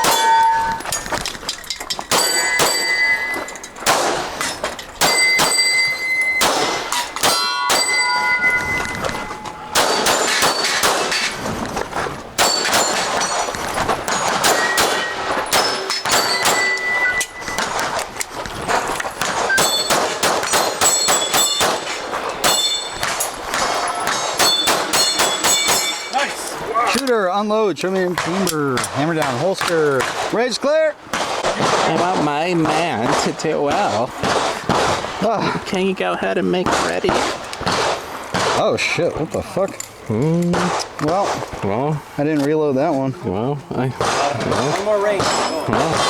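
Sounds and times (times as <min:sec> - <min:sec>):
steel plates clanging: 0:00.0 - 0:11.6, 0:12.4 - 0:18.3, 0:18.9 - 0:26.6
pistol shots: 0:02.1 - 0:08.1, 0:08.8 - 0:11.4, 0:12.4 - 0:26.1, 0:31.1 - 0:35.2, 0:36.6 - 0:38.9, 0:44.0 - 0:46.0.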